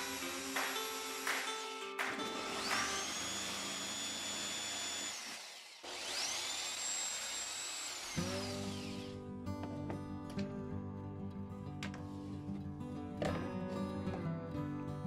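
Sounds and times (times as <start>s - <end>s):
power tool motor whine: 0.0s - 1.6s, 2.3s - 9.2s
background guitar music: 0.0s - 4.0s, 8.2s - 15.0s.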